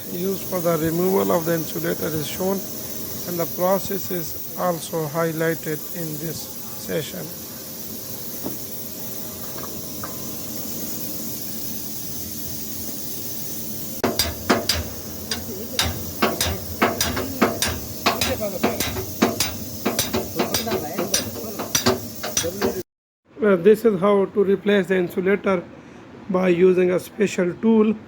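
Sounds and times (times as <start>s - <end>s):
steady hiss: 0.0s - 22.9s
hammer blows on metal: 14.0s - 22.8s.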